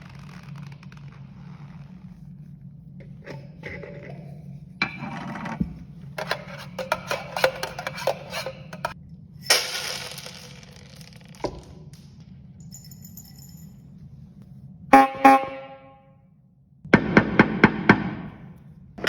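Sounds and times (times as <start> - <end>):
small clinks and rattles: 8.8 - 13.9
faint high ringing: 12.6 - 14.2.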